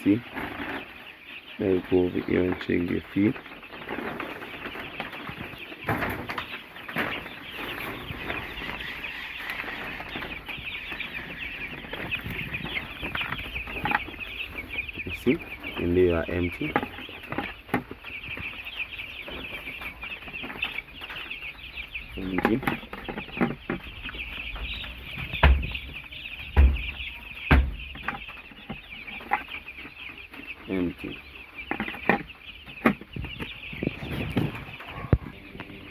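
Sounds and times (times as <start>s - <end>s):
chicks peeping: 0.0s - 35.9s
loud thumps: 24.6s - 28.3s
knocks: 25.2s - 28.2s.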